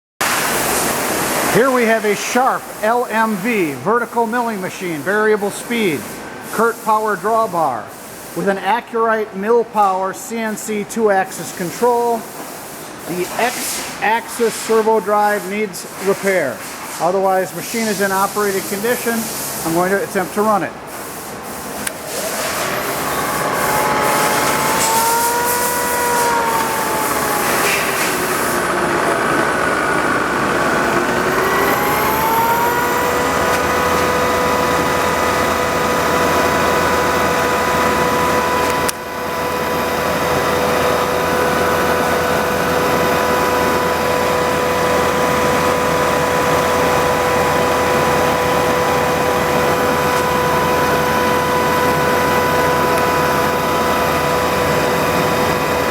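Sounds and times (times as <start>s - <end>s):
mechanical hum: 0.2s - 55.9s
milling machine whine: 21.9s - 55.9s.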